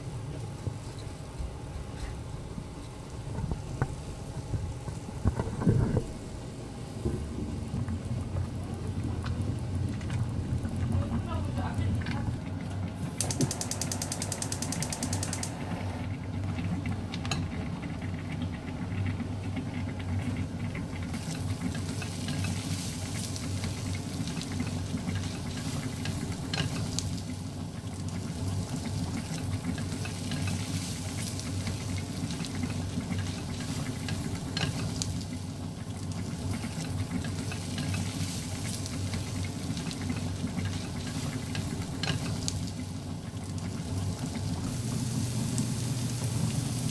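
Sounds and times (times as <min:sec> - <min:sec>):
steady low hum: 0:00.0 - 0:46.9
rapid even ticking: 0:13.2 - 0:15.6.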